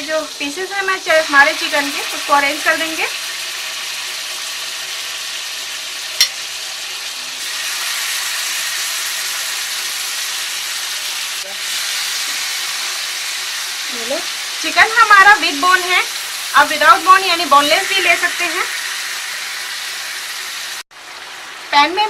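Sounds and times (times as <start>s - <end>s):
chicken sizzling in a pan: 0.0s - 22.0s.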